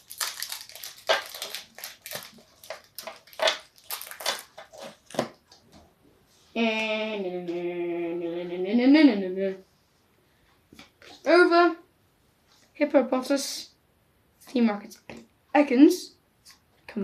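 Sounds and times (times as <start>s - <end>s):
foil wrapper crinkling and tearing: 0.0s - 5.4s
person humming: 6.6s - 9.5s.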